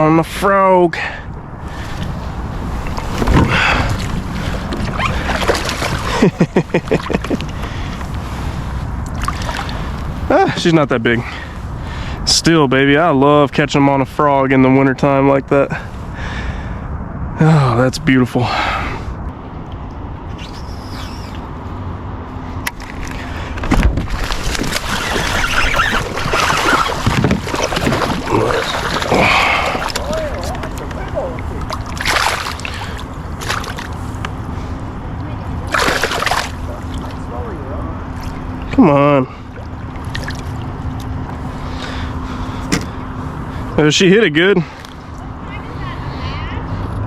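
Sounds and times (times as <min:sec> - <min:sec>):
wind and water rumble: 0:00.0 - 0:47.0
fish splashing at water surface: 0:02.8 - 0:07.8, 0:09.2 - 0:10.0, 0:24.1 - 0:34.1, 0:35.6 - 0:37.2, 0:39.5 - 0:40.8.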